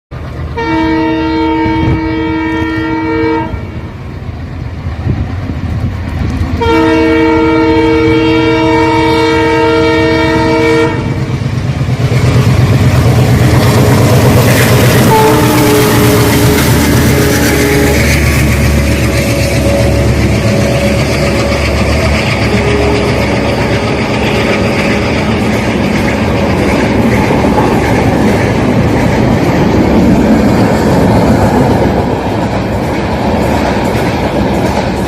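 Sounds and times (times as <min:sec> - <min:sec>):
train clattering past: 0:00.1 - 0:35.0
locomotive horn blasts: 0:00.6 - 0:03.8, 0:06.6 - 0:11.2, 0:14.9 - 0:18.4.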